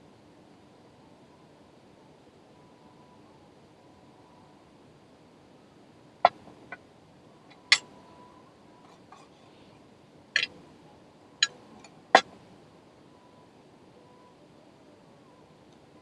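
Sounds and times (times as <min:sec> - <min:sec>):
utensils striking dishes: 0:07.7 - 0:07.9.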